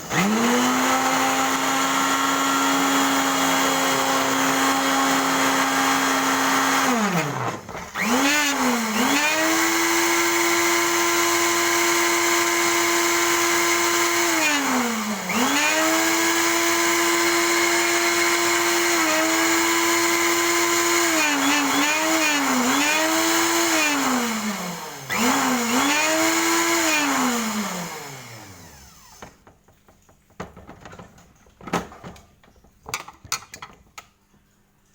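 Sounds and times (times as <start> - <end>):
power tool motor whining: 0.0 - 29.5.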